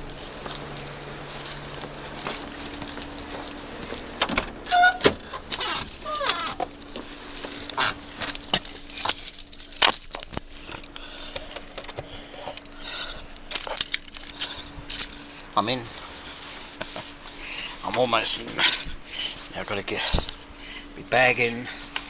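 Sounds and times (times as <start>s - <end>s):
short squeaks: 0.0s - 7.0s
car keys jangling: 0.0s - 15.3s.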